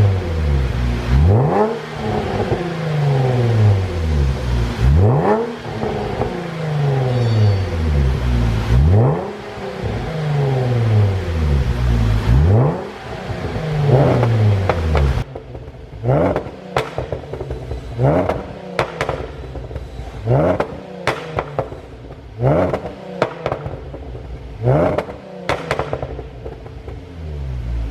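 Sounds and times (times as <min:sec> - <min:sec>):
car engine revving: 0:00.0 - 0:27.9
exhaust pops and crackles: 0:11.7 - 0:27.0.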